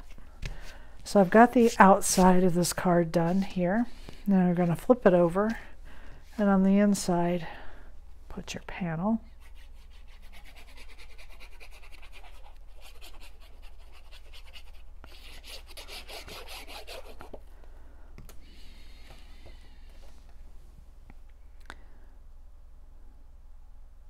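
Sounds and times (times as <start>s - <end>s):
paper rubbed by hand: 9.4s - 17.3s.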